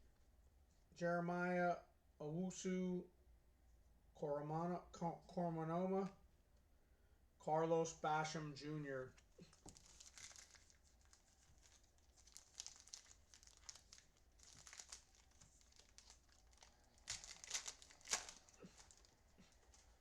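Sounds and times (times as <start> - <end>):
trading cards rustling: 9.2 - 20.0.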